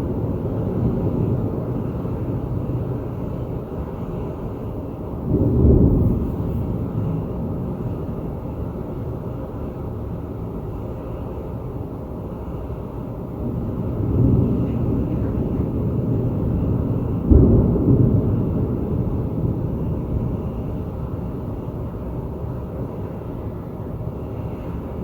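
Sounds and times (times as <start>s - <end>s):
thunder rumbling: 0.0s - 10.6s, 13.2s - 25.0s
sharp thunder clap: 5.3s - 7.2s, 14.6s - 20.2s.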